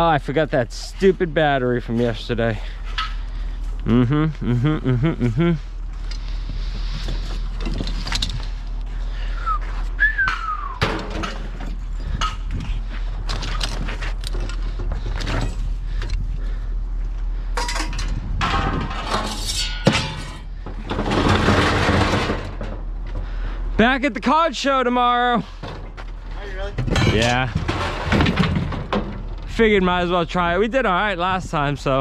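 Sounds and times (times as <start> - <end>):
low hum: 0.2 - 23.8
scrap metal clanking: 17.6 - 22.9, 25.4 - 29.6.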